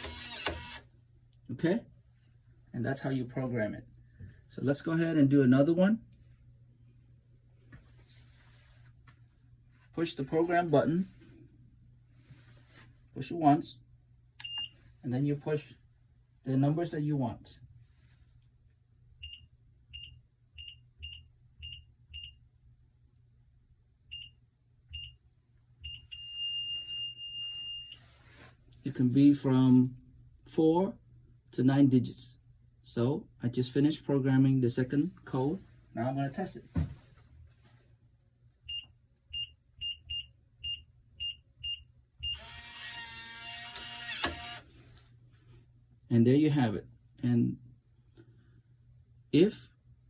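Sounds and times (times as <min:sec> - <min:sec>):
lock motor whirring: 0:00.0 - 0:00.9, 0:42.2 - 0:44.7.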